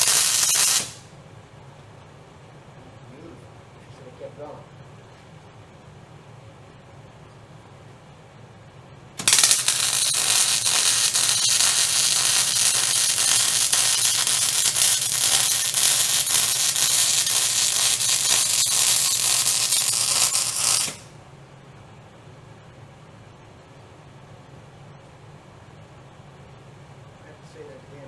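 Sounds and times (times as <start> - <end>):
welding arc crackling: 0.0 - 1.0, 9.2 - 21.1.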